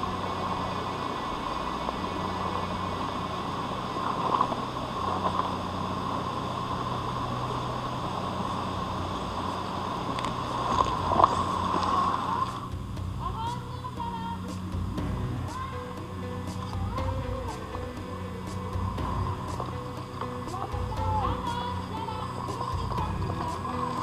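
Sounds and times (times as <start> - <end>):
electric motor whine: 0.0 - 13.2
waterfall rushing: 0.0 - 24.0.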